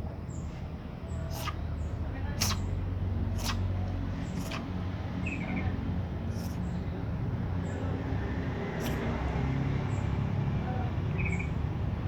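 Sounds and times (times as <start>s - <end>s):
cat congested rattly breathing: 1.2s - 1.7s, 2.4s - 2.7s, 3.3s - 3.6s, 4.2s - 4.8s, 6.2s - 6.8s, 8.7s - 9.2s
cat snuffles: 1.2s - 1.7s, 2.3s - 2.7s, 3.3s - 4.8s, 6.3s - 6.6s, 8.8s - 9.2s.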